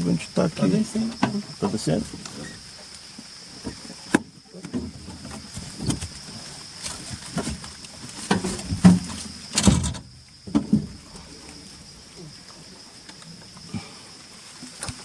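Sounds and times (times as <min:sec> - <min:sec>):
insects droning: 0:00.0 - 0:15.0
car knocks and thumps: 0:08.2 - 0:11.0.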